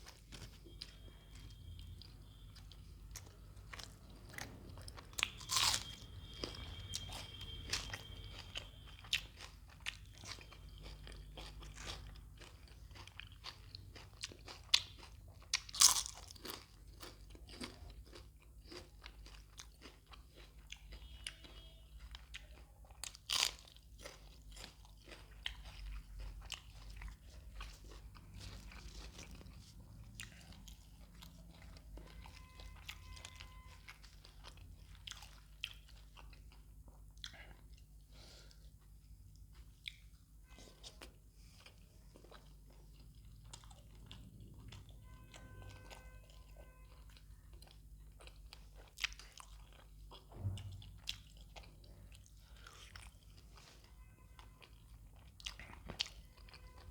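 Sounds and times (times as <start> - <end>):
chewing and wet mouth sounds: 0.0 - 56.9
loud crunchy bites: 5.2 - 6.5.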